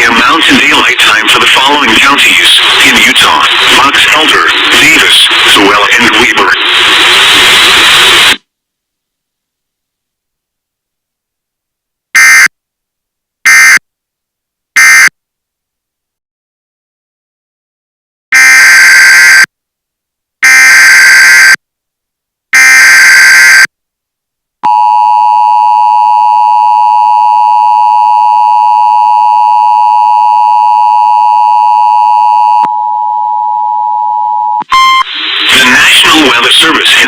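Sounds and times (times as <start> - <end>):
two-tone alarm signal: 13.5 - 13.8, 14.8 - 15.1, 18.4 - 19.5, 20.4 - 21.6, 22.6 - 23.7, 24.7 - 35.1.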